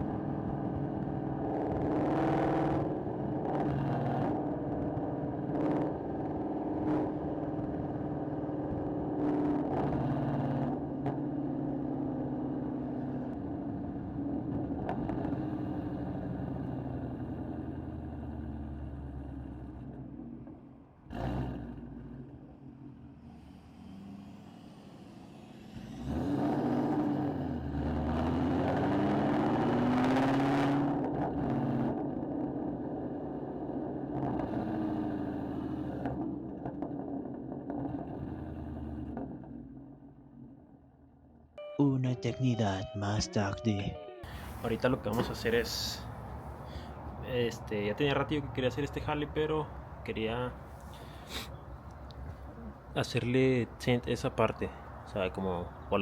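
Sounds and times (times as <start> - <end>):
car engine accelerating: 0.0 - 32.4, 44.3 - 56.0.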